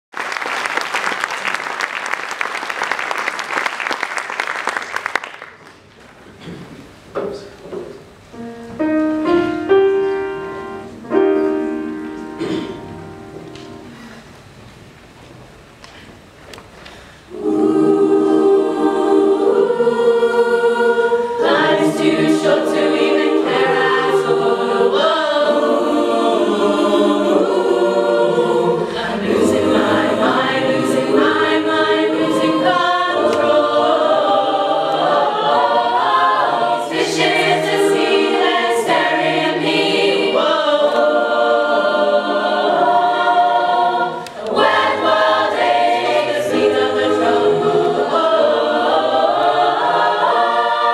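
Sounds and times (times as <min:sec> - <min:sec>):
group singing in close harmony: 0:17.3 - 0:50.9.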